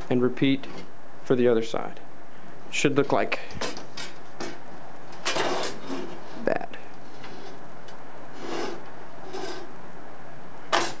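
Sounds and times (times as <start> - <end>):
steady background hiss: 0.0 - 11.0
rubbing and scraping handling: 3.6 - 7.7, 8.3 - 9.7.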